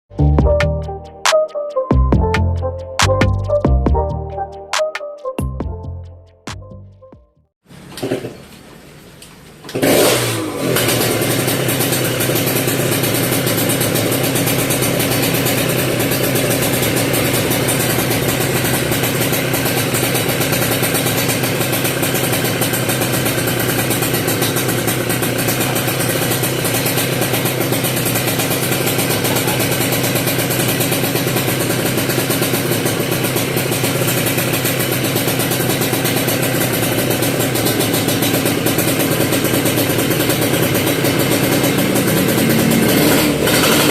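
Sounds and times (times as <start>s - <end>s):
two-stroke engine idling: 9.7s - 43.9s.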